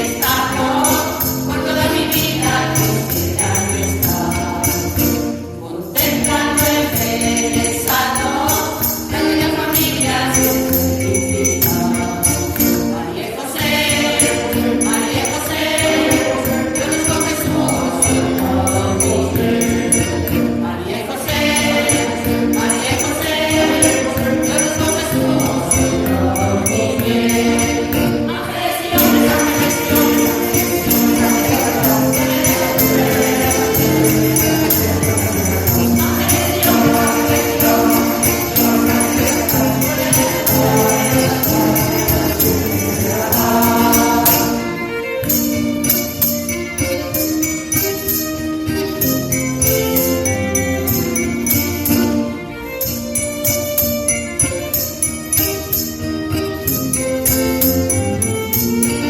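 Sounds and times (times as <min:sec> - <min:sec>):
mixed choir singing: 0:00.0 - 0:47.8
jingling percussion: 0:00.0 - 0:59.0.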